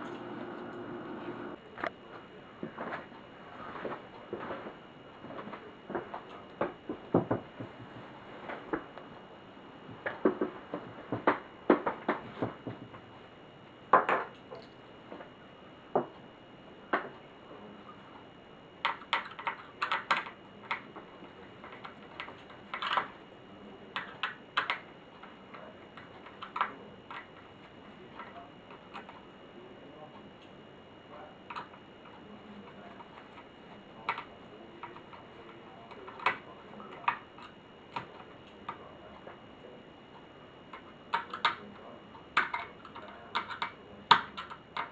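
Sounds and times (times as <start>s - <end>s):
laptop parts clicking and clattering: 18.8s - 21.0s, 21.6s - 23.2s, 23.9s - 27.5s, 40.2s - 44.9s.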